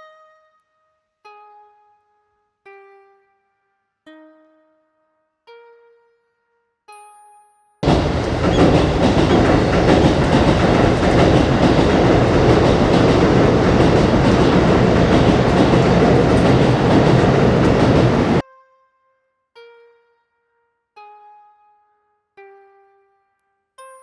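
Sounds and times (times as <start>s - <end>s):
train wheels rumbling on rails: 7.8s - 18.4s.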